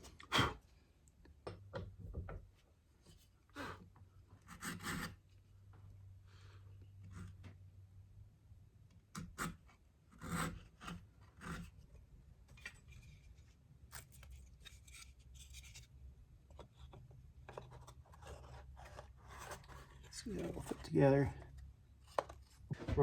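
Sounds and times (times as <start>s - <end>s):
wood scraping on wood: 4.4s - 5.2s, 9.2s - 23.0s.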